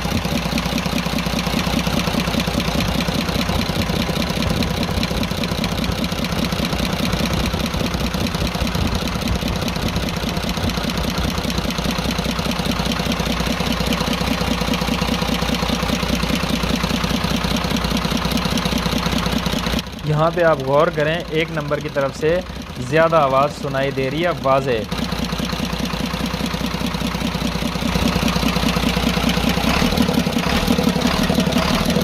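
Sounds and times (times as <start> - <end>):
diesel engine idling: 0.0 - 32.0.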